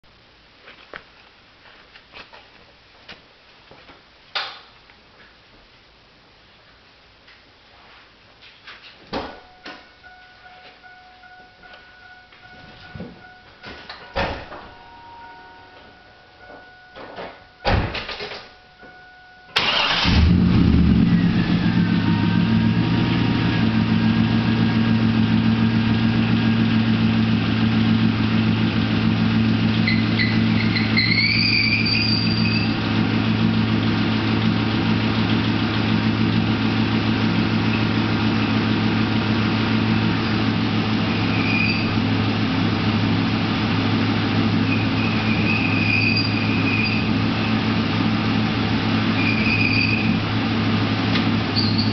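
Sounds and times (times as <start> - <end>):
warning chime: 9.4 - 17.7, 18.5 - 19.6
car engine idling: 19.6 - 51.9
brief squeak: 29.8 - 32.7, 41.4 - 41.9, 45.4 - 47.1, 49.2 - 50.1, 51.6 - 51.9
high-pitched screech: 29.8 - 32.8, 41.2 - 42.0, 44.6 - 47.2, 51.6 - 51.9.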